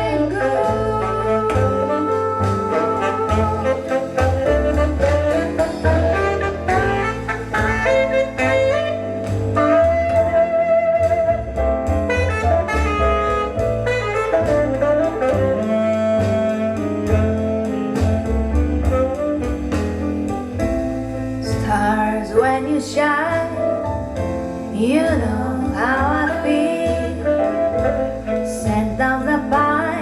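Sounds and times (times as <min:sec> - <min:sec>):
bass: 0:00.0 - 0:30.0
drums: 0:00.0 - 0:30.0
lead melody: 0:00.0 - 0:30.0.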